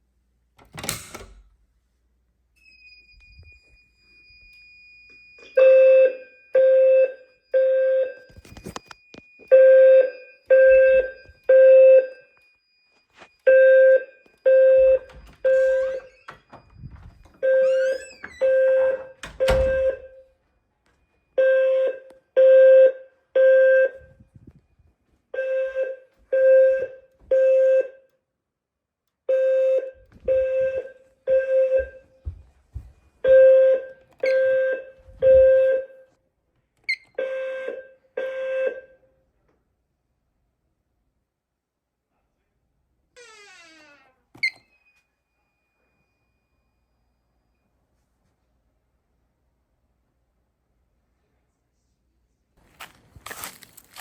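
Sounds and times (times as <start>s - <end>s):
fire alarm low beeps: 2.5s - 28.1s, 29.2s - 32.3s, 33.2s - 36.2s, 36.9s - 39.0s, 44.4s - 47.7s.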